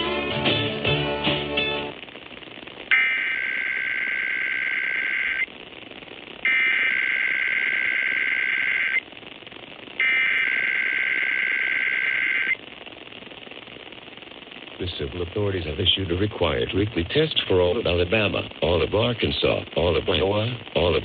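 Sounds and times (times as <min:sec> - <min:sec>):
steady hiss: 0:00.7 - 0:21.0
screeching digital data bursts: 0:02.9 - 0:05.5, 0:06.4 - 0:09.0, 0:10.0 - 0:12.6.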